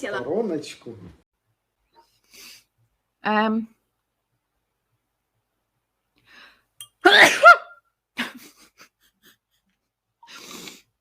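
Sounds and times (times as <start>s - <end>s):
woman sneezing: 7.0s - 7.7s.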